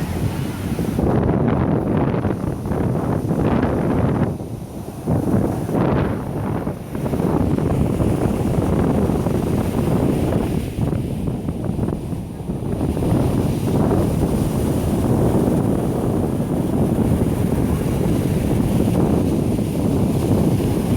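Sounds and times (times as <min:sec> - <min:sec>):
surf breaking on a beach: 0:00.0 - 0:20.9
wind buffeting microphone: 0:00.0 - 0:20.9.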